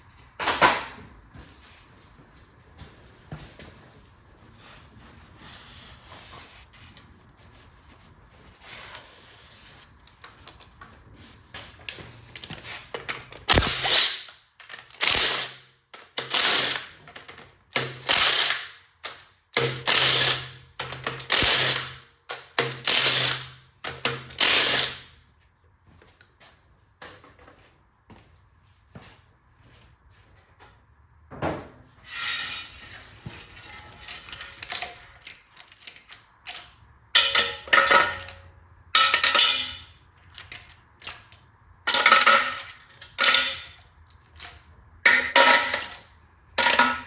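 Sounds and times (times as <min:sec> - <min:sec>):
clatter of tools and parts: 0:11.6 - 0:25.1, 0:32.1 - 0:47.0.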